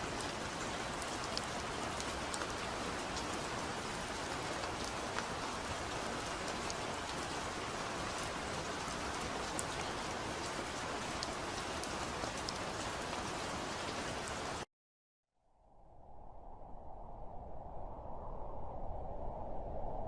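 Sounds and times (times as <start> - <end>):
steady rain falling: 0.0 - 14.7.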